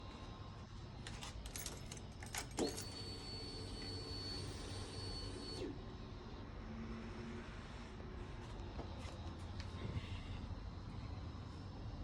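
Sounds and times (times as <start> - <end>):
car keys jangling: 1.1 - 3.0.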